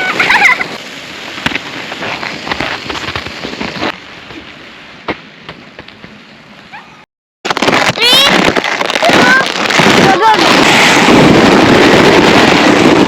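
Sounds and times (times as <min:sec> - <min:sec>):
sled sliding over snow: 0:00.0 - 0:04.9.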